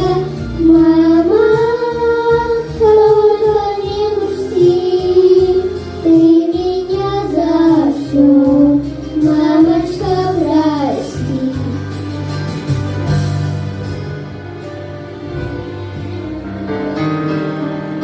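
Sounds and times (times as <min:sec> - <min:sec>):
girls singing: 0:00.0 - 0:11.8
instrumental backing track: 0:00.0 - 0:18.0.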